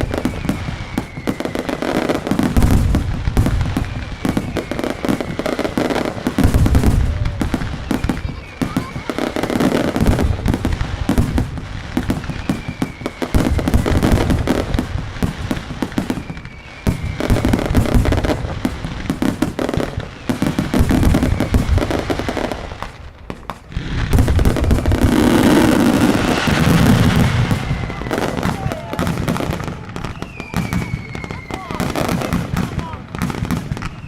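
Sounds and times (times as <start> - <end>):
falling whistles: 0.0 - 2.5, 3.6 - 9.8, 12.1 - 14.3, 16.0 - 18.3, 21.0 - 22.0, 24.7 - 32.5, 33.4 - 34.0
firecrackers banging rapidly: 0.0 - 34.0.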